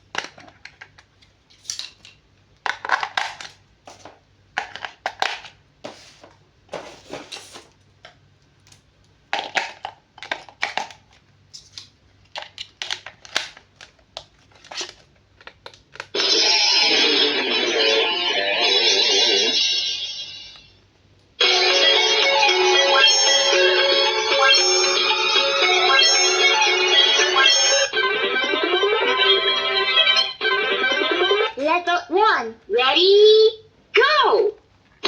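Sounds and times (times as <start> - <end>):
plastic and cardboard crinkling: 0.0 - 7.9, 9.3 - 16.1
loud guitar music: 21.4 - 31.6.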